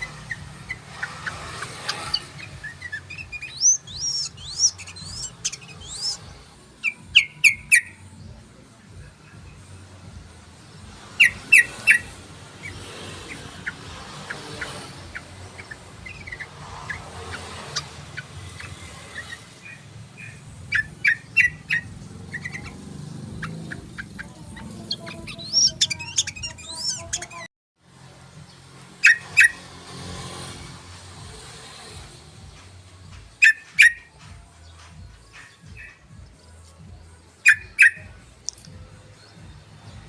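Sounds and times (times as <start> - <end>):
bird song with bubbling notes: 2.2 - 7.9.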